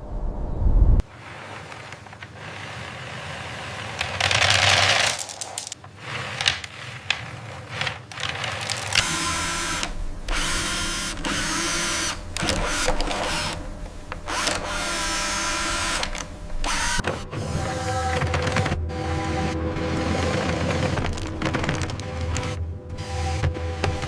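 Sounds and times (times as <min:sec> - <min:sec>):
power drill running: 0:08.4 - 0:17.0.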